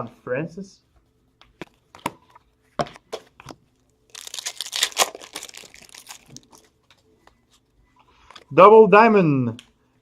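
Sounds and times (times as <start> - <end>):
foil wrapper tearing and crinkling: 4.1 - 6.7.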